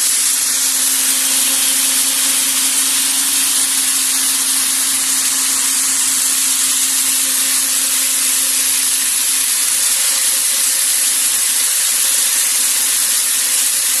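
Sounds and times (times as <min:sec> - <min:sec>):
low machine hum: 0:00.1 - 0:11.2.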